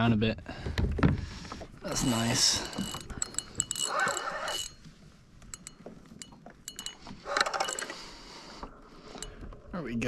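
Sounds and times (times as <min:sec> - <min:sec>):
fishing reel ratcheting: 0:01.9 - 0:04.9, 0:05.5 - 0:08.0.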